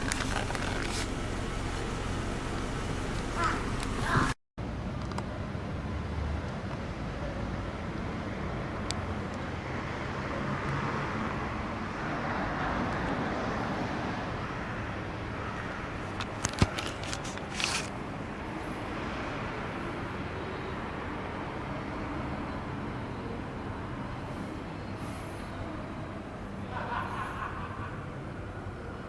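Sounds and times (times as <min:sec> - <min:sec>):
passing cars hum: 0:00.0 - 0:04.4.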